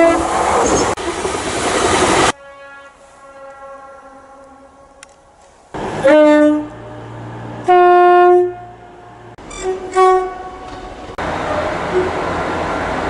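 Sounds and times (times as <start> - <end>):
two-tone train horn: 0.0 - 0.2, 2.3 - 5.3, 6.0 - 12.2.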